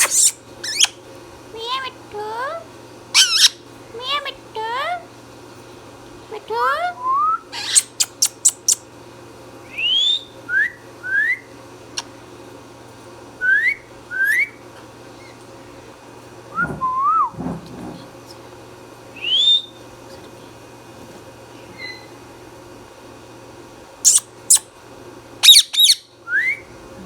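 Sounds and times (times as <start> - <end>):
parakeet low warbling call: 0.0 - 1.0, 3.1 - 4.3, 7.5 - 8.8, 25.4 - 26.1
parakeet sharp squeaks: 0.0 - 1.0, 3.2 - 3.6, 7.6 - 8.8, 24.0 - 24.7, 25.4 - 26.0
parakeet rising whistles: 9.7 - 11.5, 13.4 - 14.6, 19.2 - 19.8, 25.4 - 26.7.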